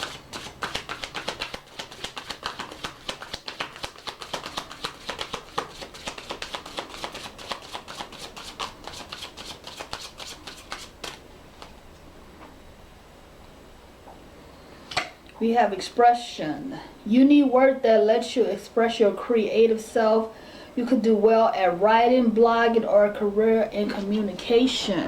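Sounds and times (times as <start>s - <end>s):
cards being shuffled: 0.0s - 11.8s.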